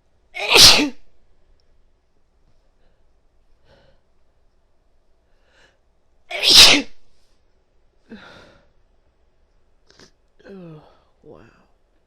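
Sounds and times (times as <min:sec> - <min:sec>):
woman sneezing: 0:00.4 - 0:01.0, 0:06.3 - 0:07.0
faint breaths: 0:02.5 - 0:04.3, 0:05.2 - 0:06.0, 0:08.0 - 0:09.1
breathy vocal sound: 0:10.4 - 0:11.1.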